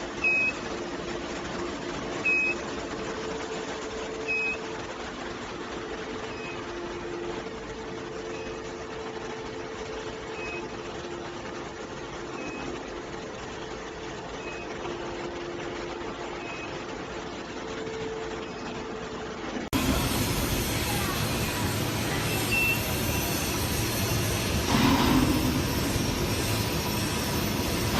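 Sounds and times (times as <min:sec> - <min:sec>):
machinery humming: 0:00.0 - 0:27.9
short high beeps: 0:22.3 - 0:23.3.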